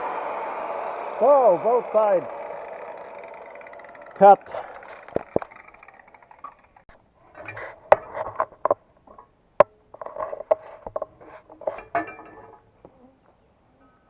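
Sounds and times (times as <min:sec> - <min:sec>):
metal parts clanking and scraping: 0:04.2 - 0:12.8
ringing metal strikes: 0:11.8 - 0:12.6.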